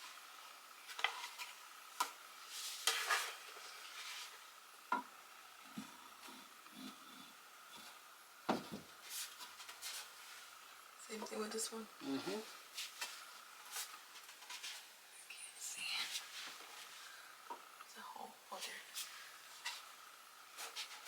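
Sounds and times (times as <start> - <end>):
shelves scraping: 2.4 - 4.5, 18.7 - 21.0.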